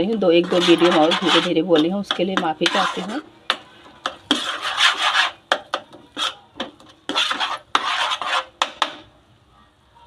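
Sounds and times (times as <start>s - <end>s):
spoon scraping a pan: 0.0s - 9.0s.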